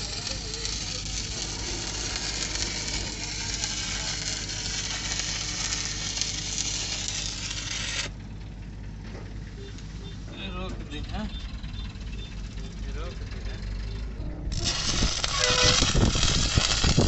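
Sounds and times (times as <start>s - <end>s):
welding arc crackling sizzle: 0.0s - 8.3s, 9.3s - 11.0s, 13.9s - 17.0s.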